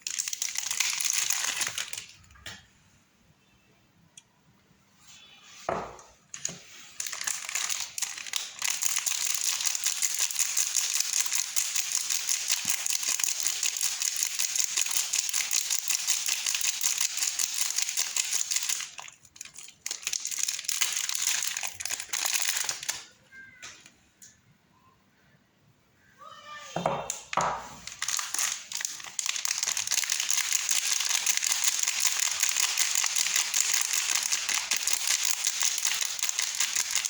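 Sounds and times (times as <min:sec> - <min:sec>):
wrapper crinkling: 0:00.0 - 0:02.3, 0:06.3 - 0:23.1, 0:27.8 - 0:37.0.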